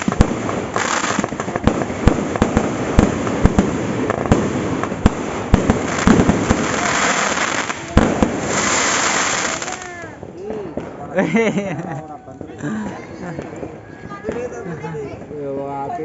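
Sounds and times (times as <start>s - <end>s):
fireworks bangs: 0.0s - 11.2s
fireworks crackle and distant pops: 0.0s - 16.0s.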